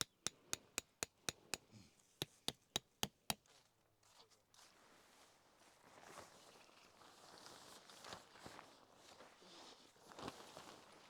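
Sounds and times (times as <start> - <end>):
sharp knocks: 0.0 - 1.6, 2.2 - 3.4.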